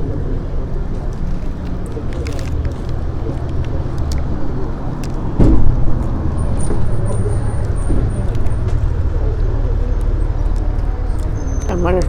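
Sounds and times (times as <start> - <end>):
low outdoor rumble: 0.0 - 12.0
loud bump: 5.2 - 8.8.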